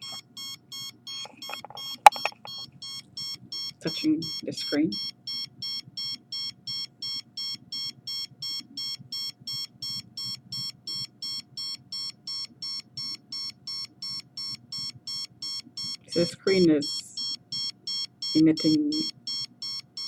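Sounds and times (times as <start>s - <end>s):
detector beeping rapidly: 1.2s - 2.6s.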